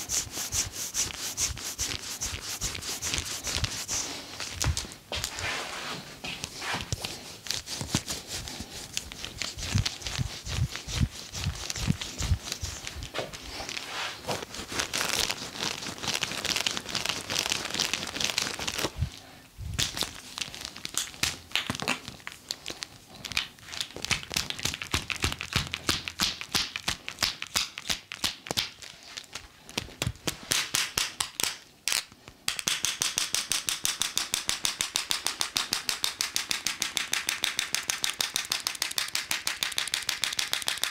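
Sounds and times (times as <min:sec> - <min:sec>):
hands rubbing skin: 0:00.0 - 0:19.0, 0:23.2 - 0:28.6, 0:34.0 - 0:40.9
hands tapping on skin: 0:23.3 - 0:28.8, 0:32.5 - 0:40.9.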